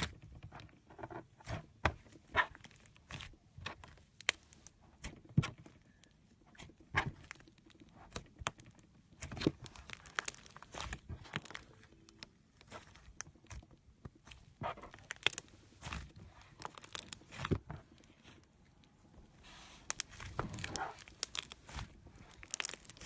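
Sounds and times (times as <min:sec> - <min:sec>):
slime squelches: 0:00.0 - 0:23.0.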